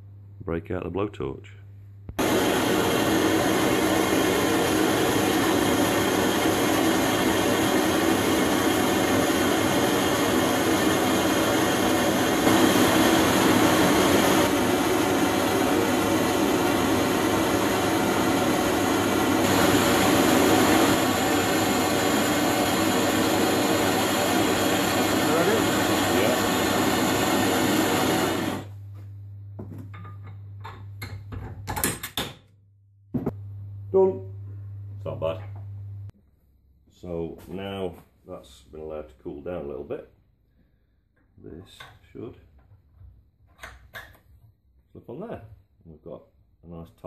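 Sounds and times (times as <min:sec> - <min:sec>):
blowtorch flame burning: 0:02.2 - 0:28.8.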